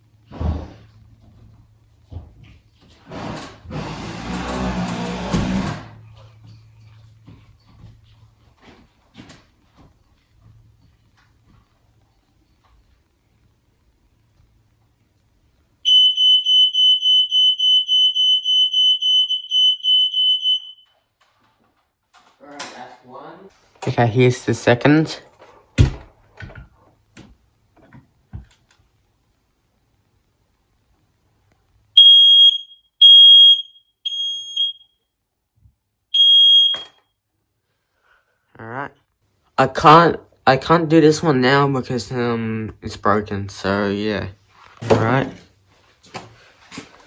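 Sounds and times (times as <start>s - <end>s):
smoke detector pulsing tone: 15.8s - 20.9s, 32.0s - 35.0s, 36.1s - 37.0s.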